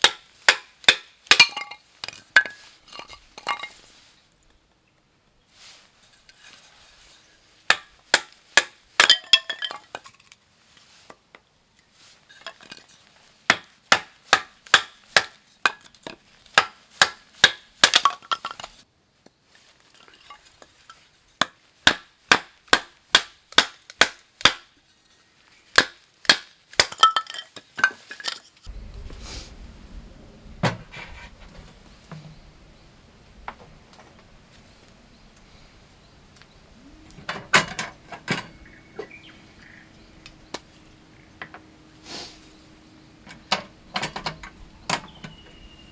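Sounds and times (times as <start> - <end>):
low steady rumble: 28.7 - 37.3
dishes and utensils clinking: 37.2 - 39.1.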